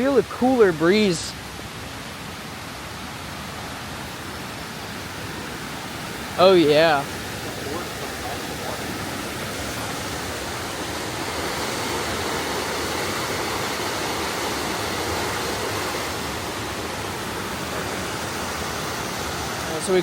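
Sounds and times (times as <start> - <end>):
water pouring over a cascade: 4.0 - 20.0.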